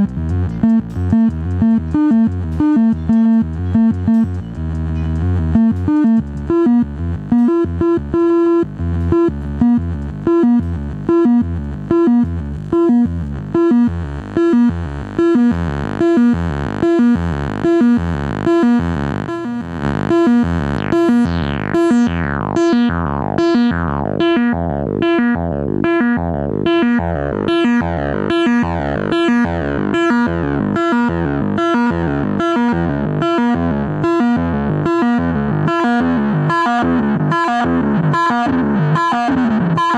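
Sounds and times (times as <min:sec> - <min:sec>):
synthesizer bass pattern: 0:00.0 - 0:39.9
falling synthesizer sweeps: 0:18.6 - 0:30.9.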